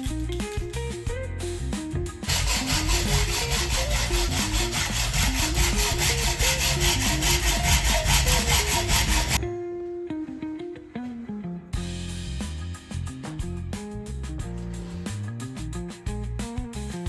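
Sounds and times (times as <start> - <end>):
raspy shaker beat: 0.0 - 9.4
background music with melody: 0.0 - 17.0
heavy bass: 0.1 - 9.4, 11.8 - 17.0.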